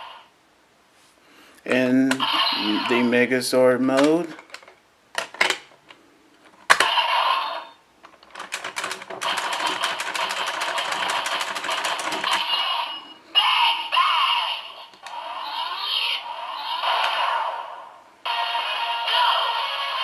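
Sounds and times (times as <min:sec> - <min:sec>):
toy electronic sound effects: 0:02.1 - 0:03.1, 0:06.8 - 0:07.8, 0:09.2 - 0:17.6
fast even clicks: 0:08.3 - 0:12.4.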